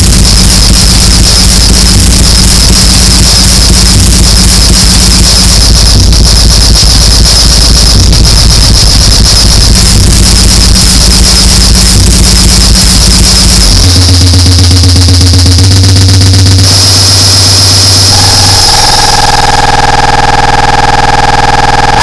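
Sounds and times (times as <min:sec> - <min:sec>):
low bass line: 0:00.0 - 0:19.5
distorted static noise music: 0:00.0 - 0:20.1.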